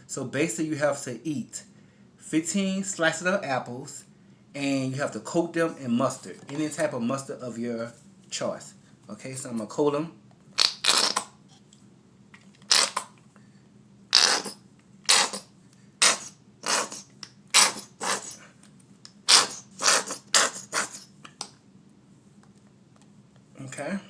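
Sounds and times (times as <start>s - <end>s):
squeeze bottle sputtering squirts: 10.6s - 11.3s, 12.7s - 13.1s, 14.1s - 18.4s, 19.3s - 21.1s.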